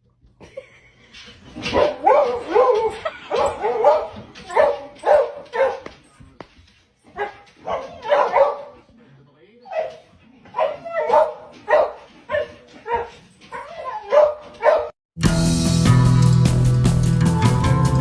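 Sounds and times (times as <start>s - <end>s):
dog barking: 1.6s - 6.0s, 7.1s - 8.9s, 9.7s - 15.0s.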